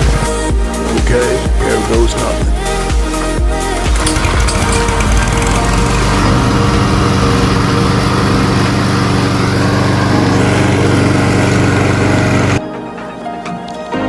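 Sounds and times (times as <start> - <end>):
lawn mower engine running: 3.9 - 12.6.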